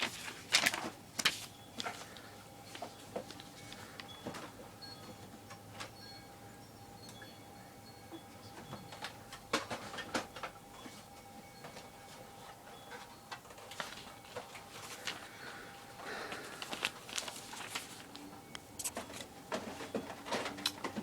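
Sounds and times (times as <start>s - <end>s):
paper sheet crinkling: 0.0s - 3.9s, 13.6s - 15.4s, 16.1s - 20.7s
faint steady hum: 0.0s - 21.0s.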